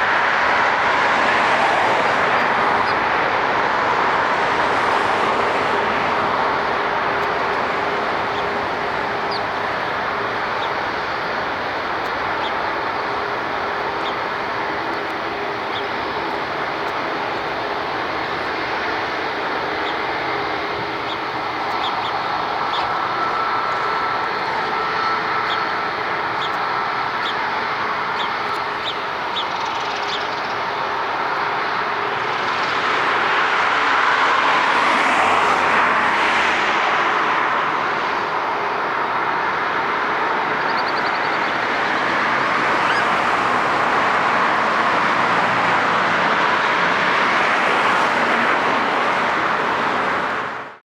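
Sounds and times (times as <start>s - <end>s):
jet engine rushing: 0.0s - 50.8s.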